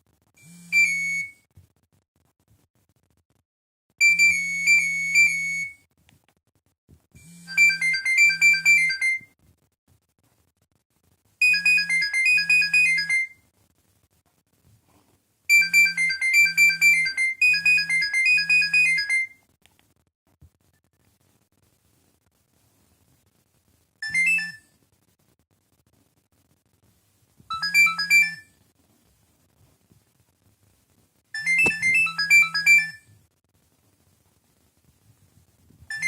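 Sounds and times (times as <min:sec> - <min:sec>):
mobile phone ringtone melody: 0:00.4 - 0:01.4, 0:04.0 - 0:05.8, 0:07.2 - 0:09.3, 0:11.4 - 0:13.4, 0:15.5 - 0:19.4, 0:24.0 - 0:24.6, 0:27.5 - 0:28.5, 0:31.4 - 0:33.1.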